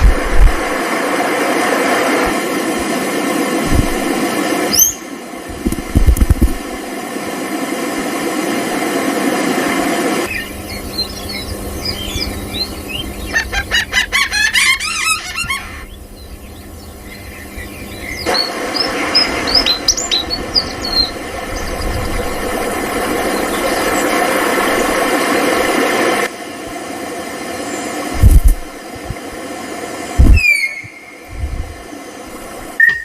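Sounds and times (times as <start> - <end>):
birds chirping and calling: 10.3 - 22.3.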